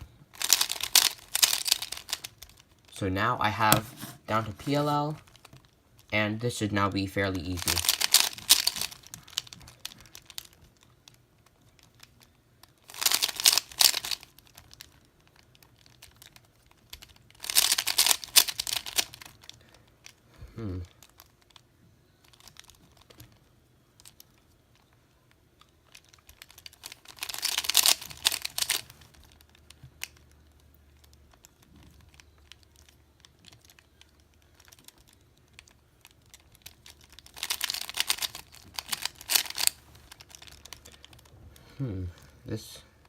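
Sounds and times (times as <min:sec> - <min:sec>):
puzzle cube plastic clicks: 0:00.2 - 0:02.9, 0:07.4 - 0:20.2, 0:22.2 - 0:41.3
rapid cube turning: 0:00.3 - 0:02.9, 0:03.6 - 0:06.1, 0:07.4 - 0:20.2, 0:25.6 - 0:30.3, 0:31.0 - 0:41.3.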